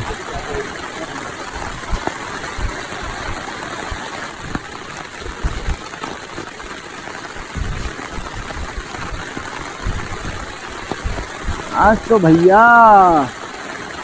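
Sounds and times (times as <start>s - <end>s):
heavy rain: 0.0s - 14.0s
low thumps: 7.6s - 12.1s.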